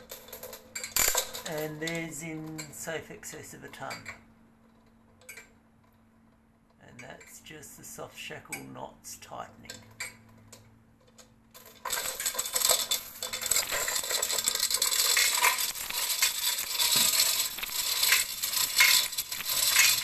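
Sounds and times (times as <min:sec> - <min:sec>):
steel chain rattling and clinking: 0:00.0 - 0:02.6, 0:11.5 - 0:20.0.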